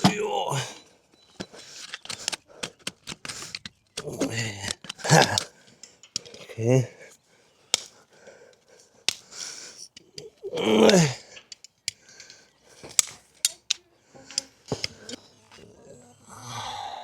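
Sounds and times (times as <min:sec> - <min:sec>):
farrier's tools clicking and snipping: 0:01.3 - 0:06.5, 0:07.7 - 0:15.2.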